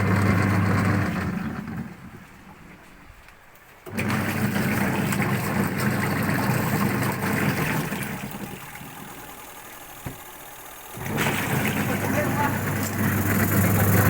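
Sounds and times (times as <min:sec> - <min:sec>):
washing machine motor humming: 0:00.0 - 0:02.7, 0:03.8 - 0:14.0
water churning: 0:00.0 - 0:14.0.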